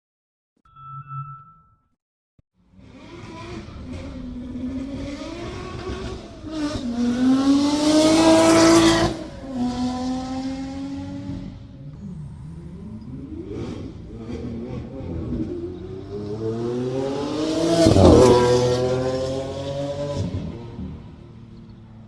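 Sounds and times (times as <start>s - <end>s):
car engine revving and idling: 2.6s - 22.0s.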